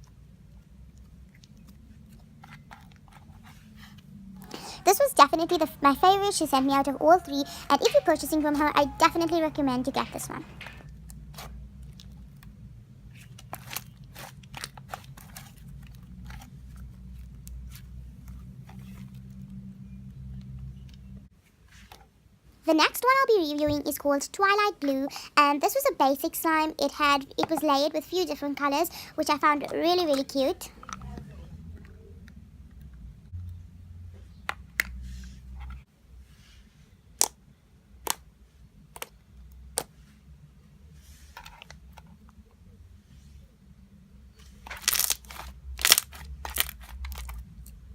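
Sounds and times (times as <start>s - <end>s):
slime squished by hand: 44.8s - 47.4s.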